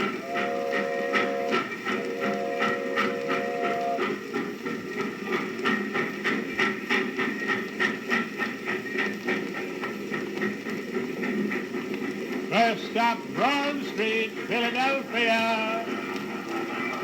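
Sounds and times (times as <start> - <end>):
train whistle: 0.0 - 4.3
train chugging: 0.0 - 17.0.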